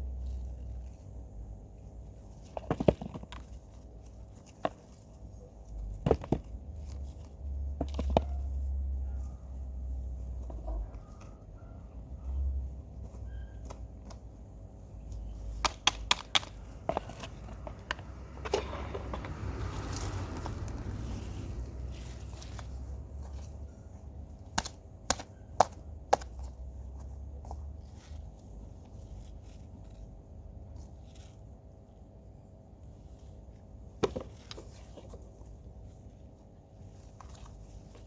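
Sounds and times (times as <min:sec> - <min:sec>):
potatoes knocking and clicking: 0:15.4 - 0:23.4, 0:24.4 - 0:27.7
low uneven rumble: 0:16.7 - 0:24.4.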